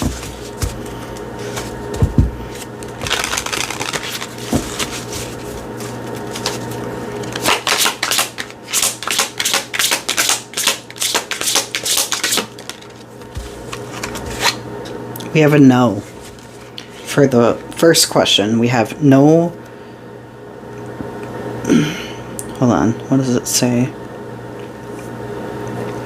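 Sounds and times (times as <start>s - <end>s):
cards being shuffled: 0.0s - 14.6s
cards rustling: 2.5s - 14.6s.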